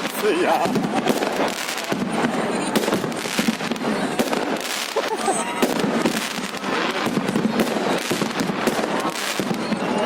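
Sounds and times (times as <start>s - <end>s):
fireworks bangs and crackles: 0.0s - 10.0s.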